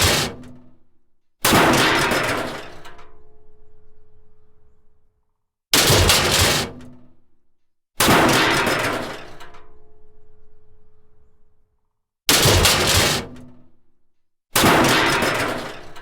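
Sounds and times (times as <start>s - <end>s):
metal crashes: 14.6s - 16.0s.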